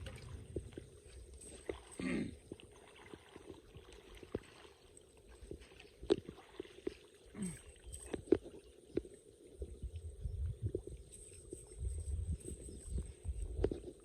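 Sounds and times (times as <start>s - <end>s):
water splashing: 0.0s - 9.0s.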